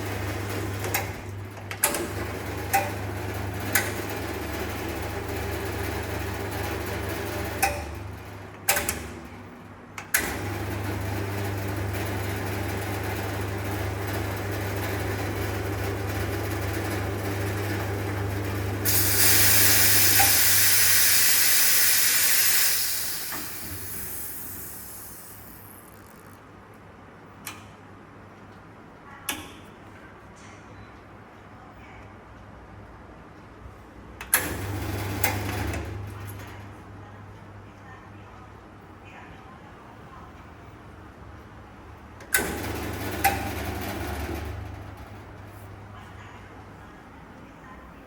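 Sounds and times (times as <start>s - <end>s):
coffee machine humming: 0.0s - 8.4s, 10.3s - 26.3s, 34.5s - 36.1s, 42.4s - 46.0s
steam hissing: 18.8s - 25.9s.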